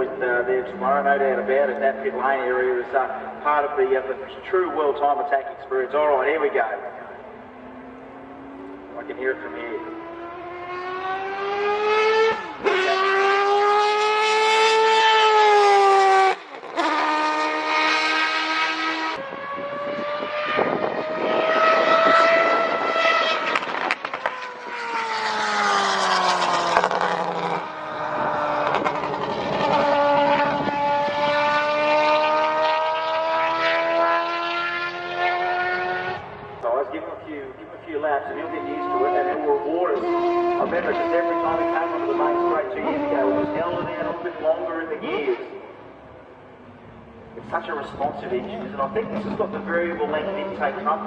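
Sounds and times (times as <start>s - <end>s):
racing car engine revving: 0.0s - 4.4s, 7.0s - 51.0s.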